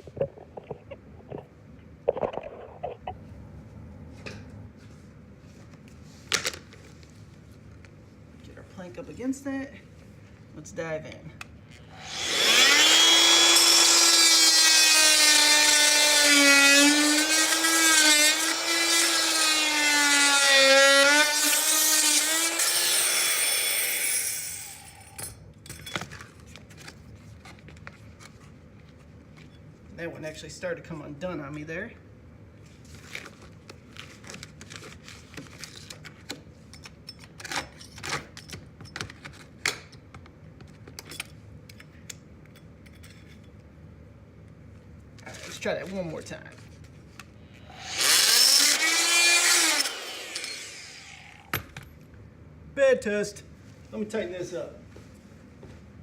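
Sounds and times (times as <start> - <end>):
oscillating multi-tool cutting: 11.9 - 25.3, 47.6 - 51.6.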